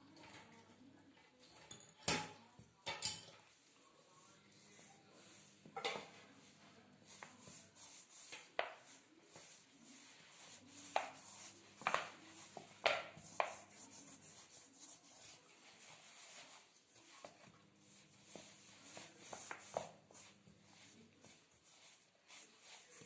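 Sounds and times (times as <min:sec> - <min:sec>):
hand kneading dough: 0:04.2 - 0:23.0.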